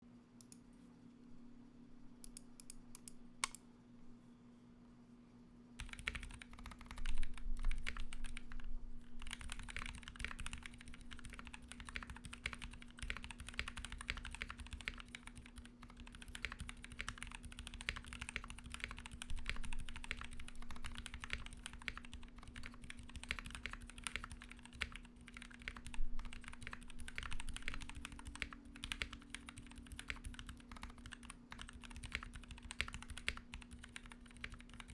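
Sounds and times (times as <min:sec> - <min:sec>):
low steady hum: 0:00.0 - 0:34.9
mechanical keyboard typing: 0:02.2 - 0:03.6, 0:05.8 - 0:34.9.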